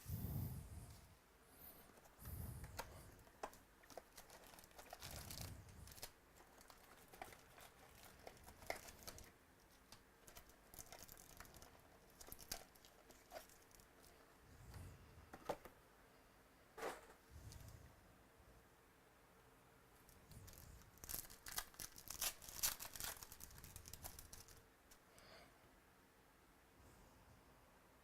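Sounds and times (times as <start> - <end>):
cards being handled: 1.9 - 14.1, 20.4 - 24.6
wrappers crinkling and tearing: 2.7 - 14.1, 20.4 - 24.6.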